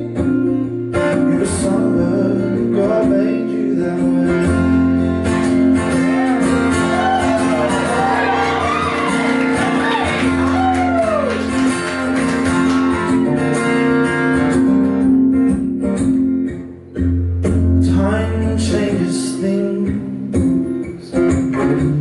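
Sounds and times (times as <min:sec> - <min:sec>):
acoustic guitar chords: 0:00.0 - 0:22.0
person singing wordless melody: 0:17.8 - 0:20.4.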